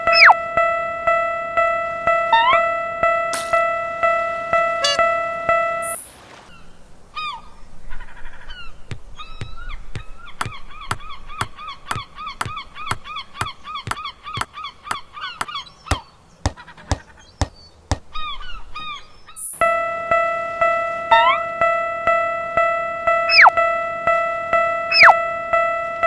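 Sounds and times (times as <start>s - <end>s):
short honking calls: 4.6s - 6.0s.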